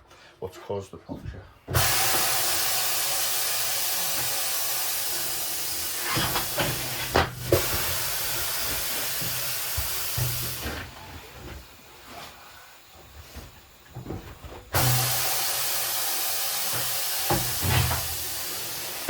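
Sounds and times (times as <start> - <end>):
air hissing out of tyre: 1.7 - 10.8, 14.7 - 19.0.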